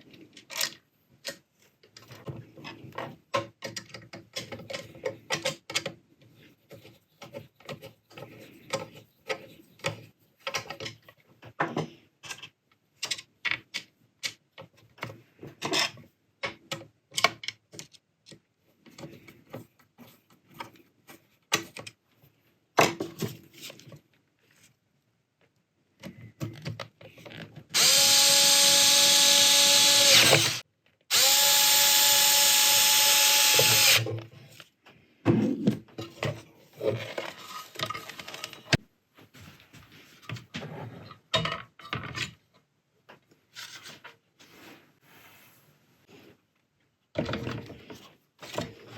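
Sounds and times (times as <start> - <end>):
small parts clicking and knocking: 0.2 - 6.1, 6.7 - 19.9
power drill whining: 27.7 - 34.1.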